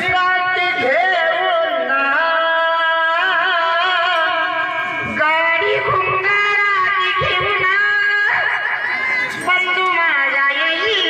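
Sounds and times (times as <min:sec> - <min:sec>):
man singing in high voice: 0:00.0 - 0:08.5.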